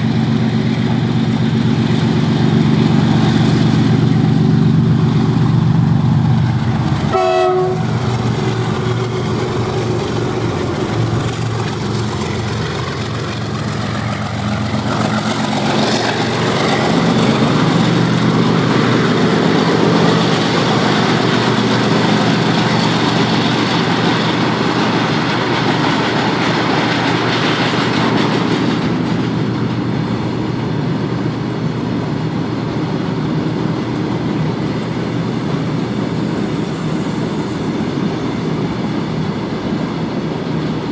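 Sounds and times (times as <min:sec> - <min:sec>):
diesel locomotives running: 0:00.0 - 0:40.9
train horn blast: 0:07.1 - 0:09.6.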